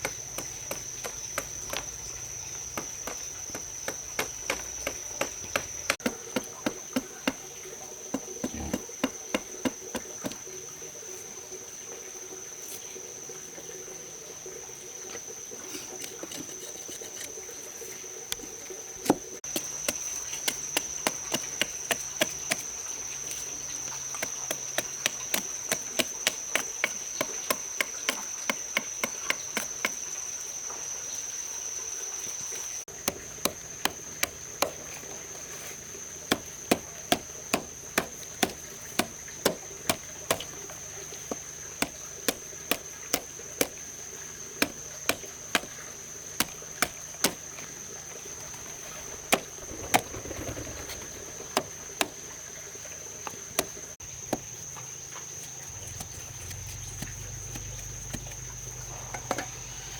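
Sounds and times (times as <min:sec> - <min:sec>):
tool striking wood: 0:02.7 - 0:07.5, 0:08.1 - 0:10.4, 0:32.9 - 0:35.2, 0:36.3 - 0:43.8, 0:44.6 - 0:45.8, 0:46.4 - 0:47.6, 0:50.9 - 0:52.2.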